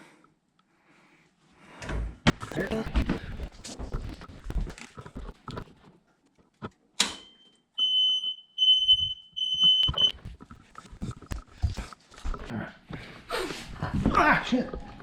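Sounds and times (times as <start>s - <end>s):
electronic alarm beeps: 7.2s - 10.3s.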